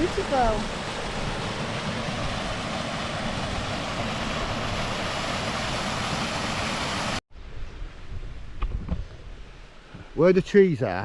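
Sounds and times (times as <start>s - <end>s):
small waterfall rushing: 0.0s - 7.2s.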